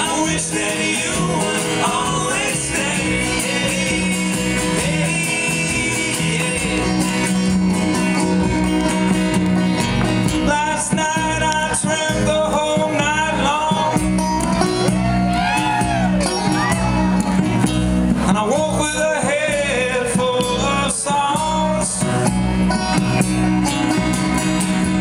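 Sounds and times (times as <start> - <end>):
person singing: 0.0 - 7.6, 10.4 - 17.3
plucked strings: 0.0 - 25.0
strummed acoustic guitar: 0.0 - 25.0.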